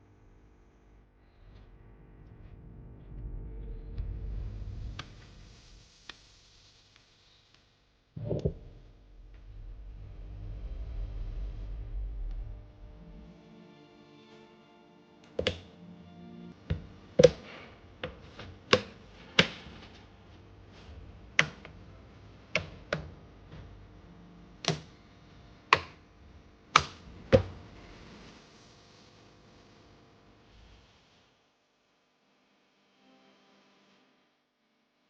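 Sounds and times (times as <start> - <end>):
faint background music: 10.0 - 28.7.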